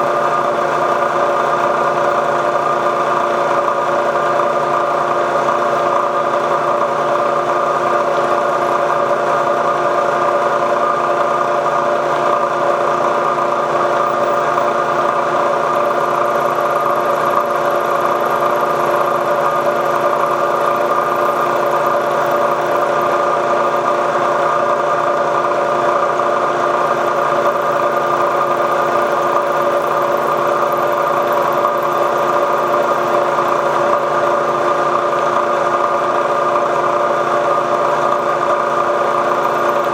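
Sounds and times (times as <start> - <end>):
milling machine cutting steel: 14.0 - 34.2, 38.6 - 39.9.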